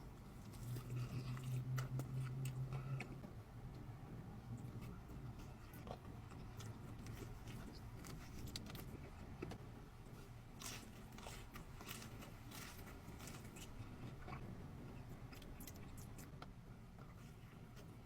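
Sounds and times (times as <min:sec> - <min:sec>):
person chewing food: 0:00.4 - 0:03.2, 0:04.6 - 0:09.5, 0:10.2 - 0:16.4.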